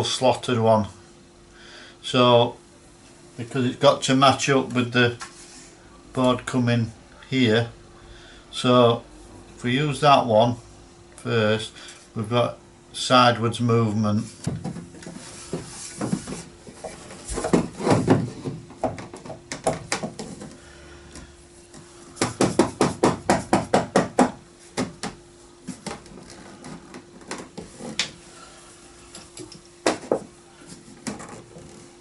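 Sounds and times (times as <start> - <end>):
faint steady hum: 0.0 - 32.0
knocks and clatter of bracket: 14.4 - 15.2, 16.0 - 20.5.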